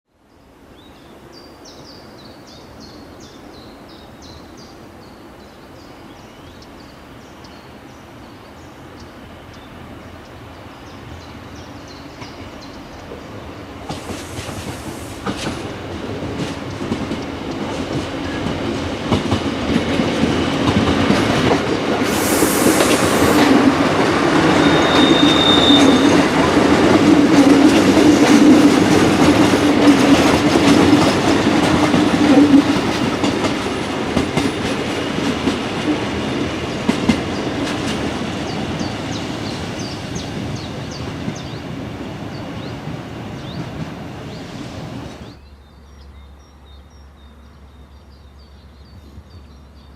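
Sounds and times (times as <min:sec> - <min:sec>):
railcar clattering over points: 0:12.2 - 0:39.0
high wheel squeal: 0:24.4 - 0:26.3.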